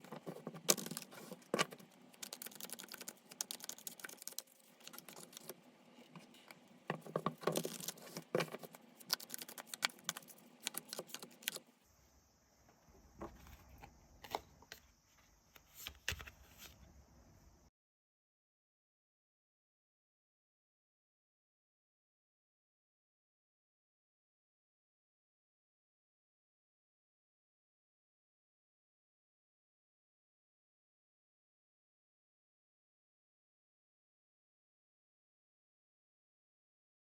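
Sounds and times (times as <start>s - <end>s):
cards shuffling and tapping: 0.0s - 11.6s, 15.6s - 16.8s.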